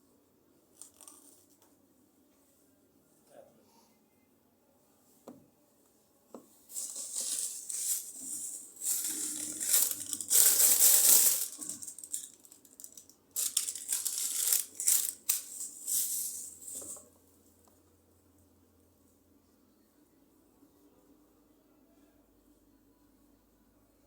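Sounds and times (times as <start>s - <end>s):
rustling and rubbing: 6.6s - 17.1s.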